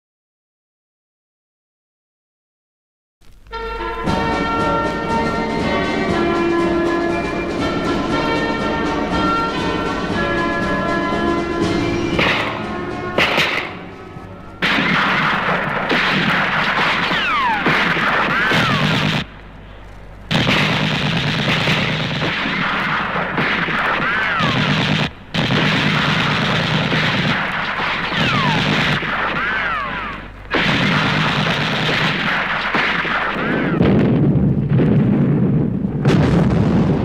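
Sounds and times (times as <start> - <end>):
explosions: 12.2 - 14.0, 14.6 - 19.3, 20.3 - 37.0
gunfire: 12.2 - 14.0, 14.6 - 19.4, 20.3 - 35.4.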